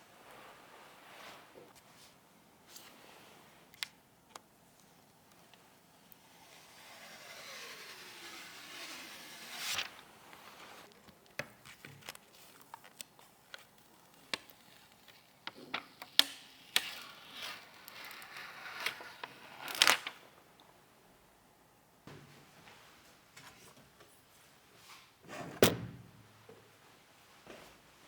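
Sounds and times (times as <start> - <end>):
packaging rustling: 9.7 - 16.0.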